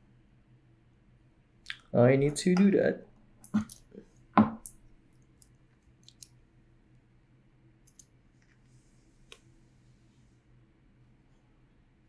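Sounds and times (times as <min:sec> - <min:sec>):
faint small clicks: 0:04.6 - 0:06.4, 0:07.9 - 0:08.7.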